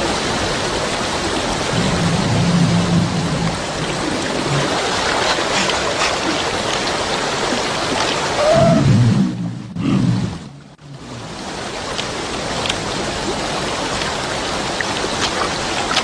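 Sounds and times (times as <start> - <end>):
steady water noise: 0.0 - 16.0
low rumble: 1.6 - 5.4, 8.4 - 11.6.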